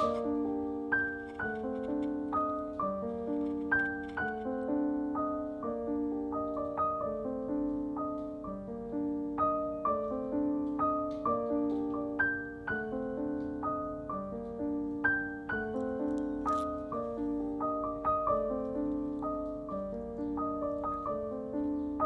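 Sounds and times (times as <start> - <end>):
piano music: 0.0 - 22.0.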